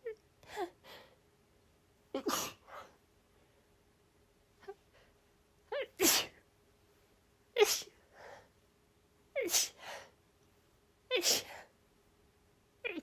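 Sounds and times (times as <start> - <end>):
woman sneezing: 2.2 - 2.8, 5.8 - 6.4, 7.6 - 8.0, 9.4 - 9.8, 11.2 - 11.6.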